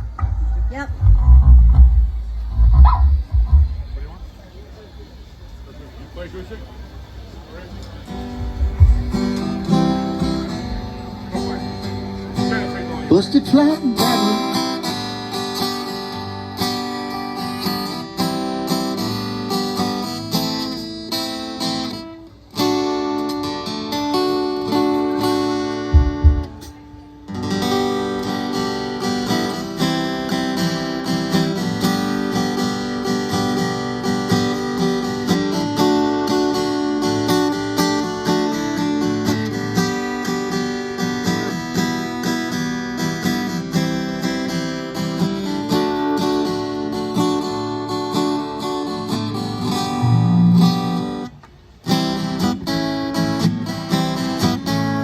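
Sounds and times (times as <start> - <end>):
low thump: 0.0 - 4.0, 8.4 - 9.4, 25.9 - 26.7
acoustic guitar strumming: 0.0 - 4.4, 7.8 - 55.0.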